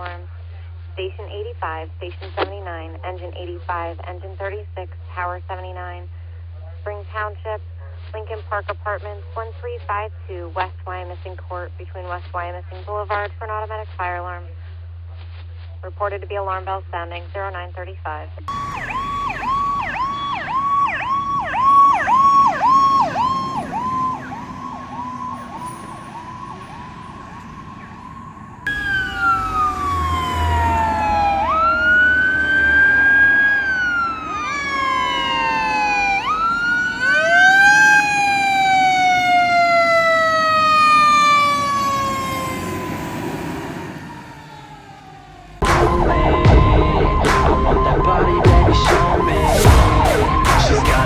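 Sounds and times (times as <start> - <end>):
electronic siren: 18.5 - 51.0.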